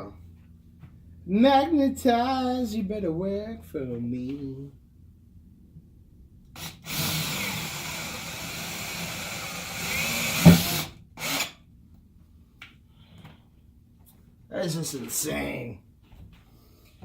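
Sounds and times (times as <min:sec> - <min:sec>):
power drill driving screw: 0:06.6 - 0:11.6.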